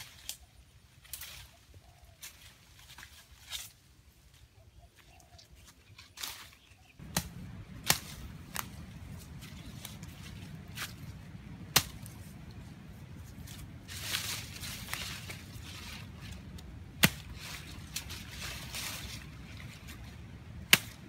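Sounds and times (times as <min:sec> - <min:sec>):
low steady rumble: 0:07.0 - 0:21.0.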